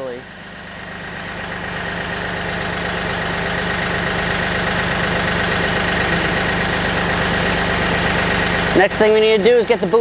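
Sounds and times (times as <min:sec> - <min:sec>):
tractor diesel engine running: 0:00.0 - 0:10.0
high whine: 0:00.5 - 0:10.0.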